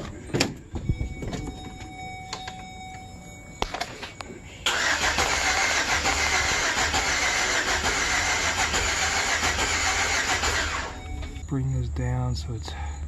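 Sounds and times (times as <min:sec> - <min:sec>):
engine cranking on starter: 0:04.6 - 0:11.4.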